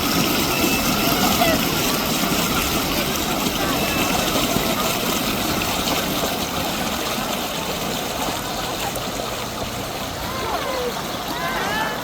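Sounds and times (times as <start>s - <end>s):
water flowing in a stream: 0.0s - 12.0s.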